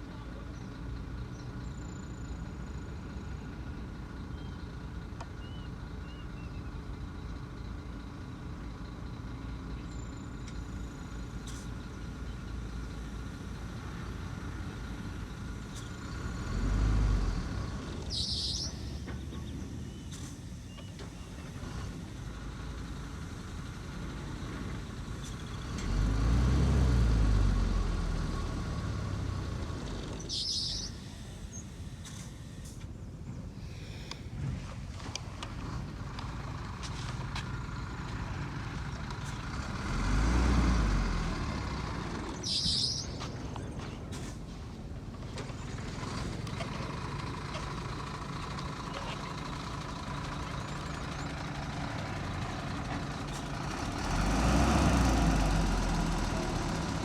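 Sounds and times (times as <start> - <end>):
heavy diesel engine revving: 10.9 - 32.8, 35.4 - 57.0.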